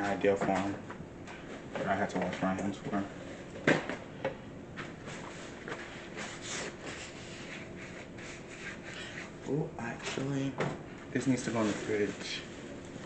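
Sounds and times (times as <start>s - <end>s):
faint rubbing and handling noises: 4.7s - 10.5s, 11.1s - 13.0s.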